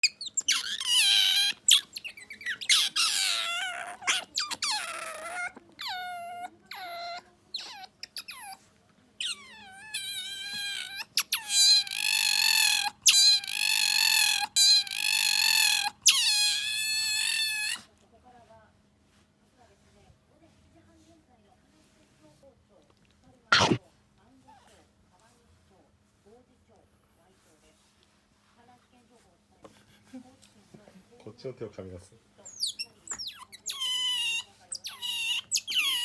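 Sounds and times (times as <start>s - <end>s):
otter squealing: 0.0s - 8.6s, 9.2s - 17.8s, 23.5s - 23.8s, 32.5s - 36.0s.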